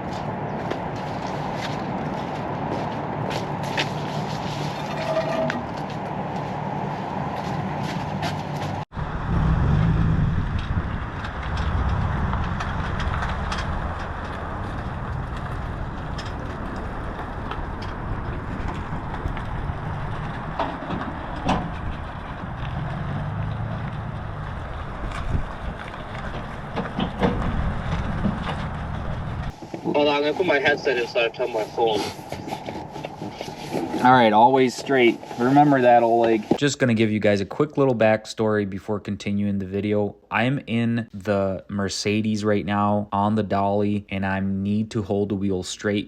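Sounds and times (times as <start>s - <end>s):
vehicle engine and road noise: 0.0s - 46.0s
wind: 0.0s - 46.0s.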